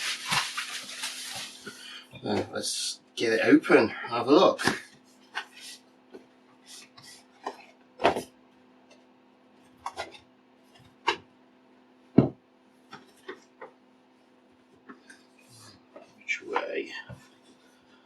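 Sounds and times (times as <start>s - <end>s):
faint steady hum: 0.0s - 18.0s
knock on cardboard box: 12.2s - 12.4s.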